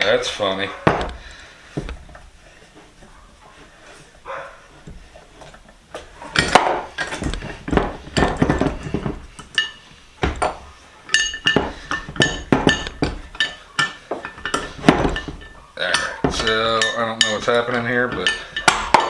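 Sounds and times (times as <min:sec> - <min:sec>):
metal vise parts clanking: 0:00.0 - 0:19.0.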